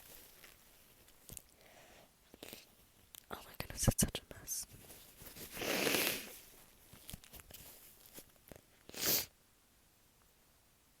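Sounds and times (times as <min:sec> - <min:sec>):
tissue handling: 0:00.0 - 0:01.3, 0:04.7 - 0:08.5
nose blowing into tissue: 0:05.5 - 0:06.4, 0:08.9 - 0:09.3.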